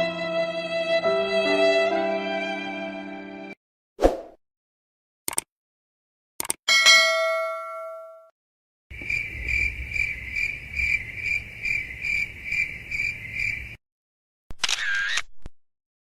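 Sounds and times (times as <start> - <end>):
metallic ding: 6.7 - 8.3.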